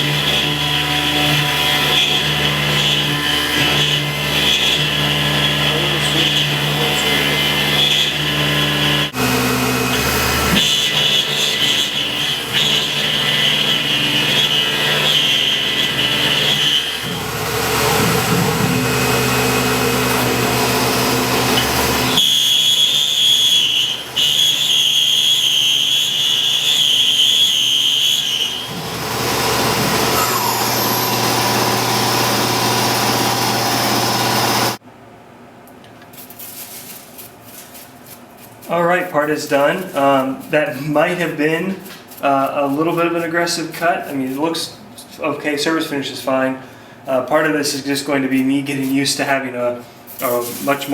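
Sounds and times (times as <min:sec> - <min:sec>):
milling machine cutting whine: 0:00.0 - 0:34.8.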